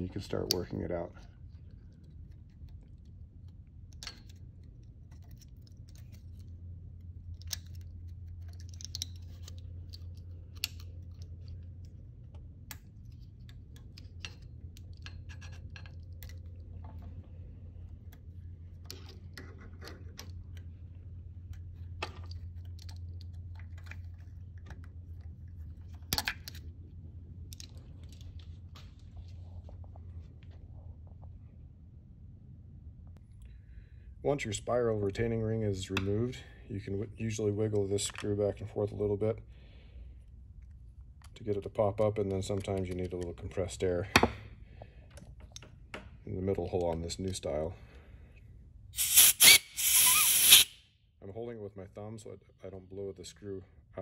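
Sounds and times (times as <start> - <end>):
steady low hum: 0.0 - 49.8
small metal clicks and scrapes: 7.3 - 12.0.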